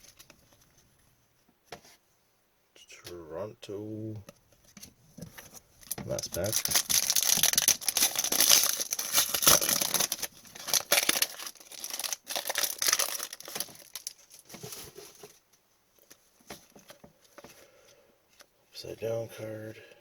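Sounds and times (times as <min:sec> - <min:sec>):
wrapper tearing and crinkling: 0:05.8 - 0:14.7.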